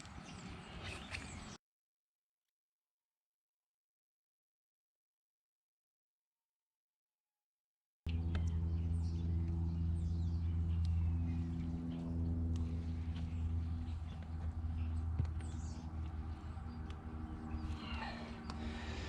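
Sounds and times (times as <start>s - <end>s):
birds chirping: 0.0s - 1.6s, 8.1s - 19.0s
engine idling: 8.1s - 19.0s.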